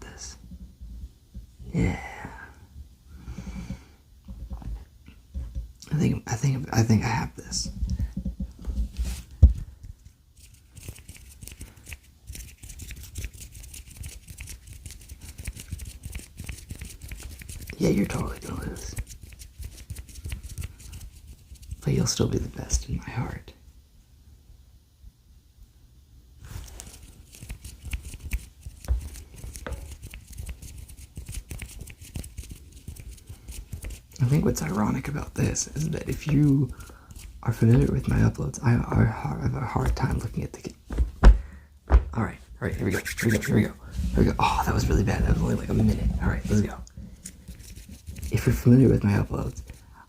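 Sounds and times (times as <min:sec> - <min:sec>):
skin rubbing and rustling: 0:07.8 - 0:22.4, 0:26.4 - 0:41.3, 0:41.9 - 0:50.0
low thumps: 0:40.9 - 0:42.2.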